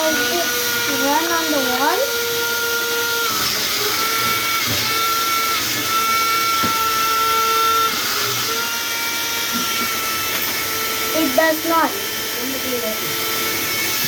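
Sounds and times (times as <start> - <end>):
electric fan whine: 0.0 - 13.9.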